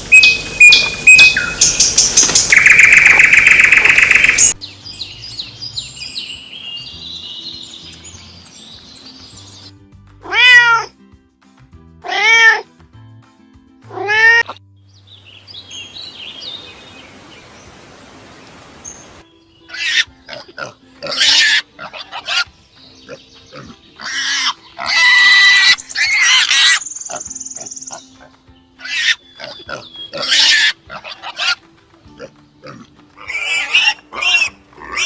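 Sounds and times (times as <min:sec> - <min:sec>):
faint background music: 0:00.2 - 0:35.0
cat meowing: 0:10.2 - 0:10.9, 0:12.0 - 0:12.6
harsh animal squeals: 0:19.7 - 0:22.5, 0:23.5 - 0:28.0, 0:28.8 - 0:31.6, 0:32.6 - 0:35.0.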